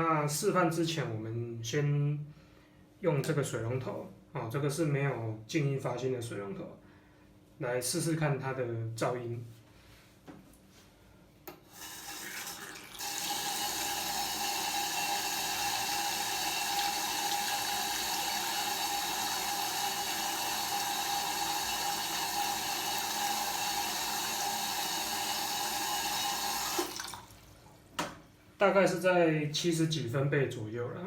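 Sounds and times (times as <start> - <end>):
water rushing from tap: 11.7 - 27.6.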